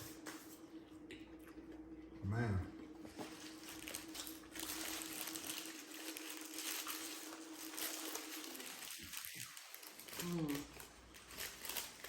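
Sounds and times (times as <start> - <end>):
wrapper crinkling: 3.2 - 12.0.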